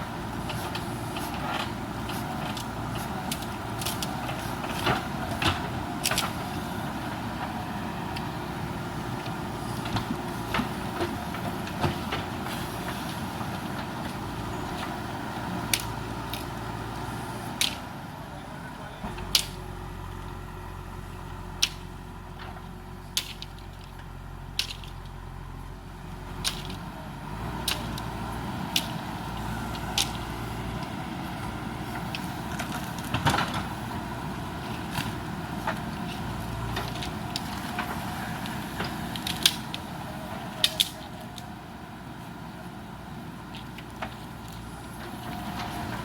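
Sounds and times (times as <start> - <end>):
diesel engine running: 0.0 - 46.0
sharp cracks and knocks: 3.3 - 6.4, 19.2 - 19.6, 21.6 - 24.0, 24.6 - 25.1, 26.4 - 26.8, 34.7 - 39.8, 40.6 - 41.1.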